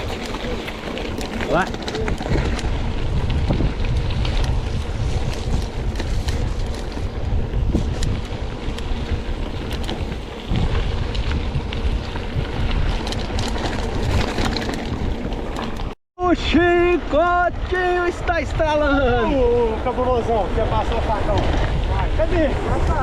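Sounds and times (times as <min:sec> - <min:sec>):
bike clicks and rattles: 0:00.0 - 0:16.0, 0:20.7 - 0:23.0
wind buffeting microphone: 0:00.0 - 0:16.0, 0:16.6 - 0:23.0.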